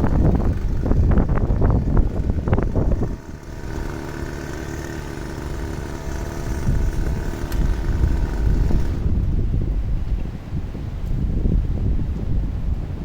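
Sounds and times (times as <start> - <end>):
rough crackling handling noise: 0.0 - 9.4
small engine running: 0.0 - 9.8.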